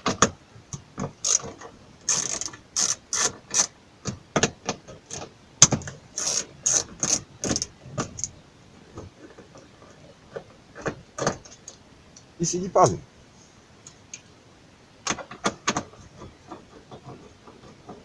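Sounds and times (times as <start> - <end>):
ratchet clicking: 1.2 - 3.7, 6.1 - 8.3.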